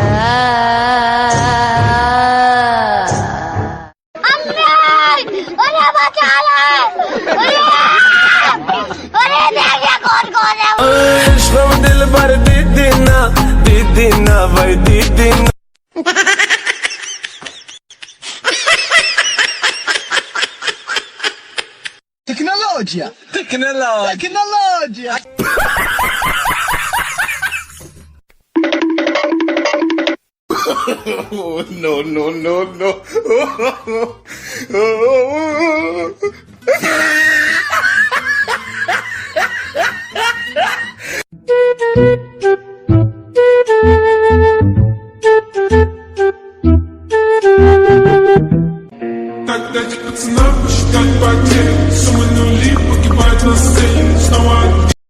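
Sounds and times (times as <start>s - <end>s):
bursts of laughter: 4.3s - 10.8s, 36.6s - 41.2s
music: 10.8s - 15.6s, 41.3s - 55.0s
high-pitched giggling laugh: 16.0s - 22.0s, 36.7s - 41.0s.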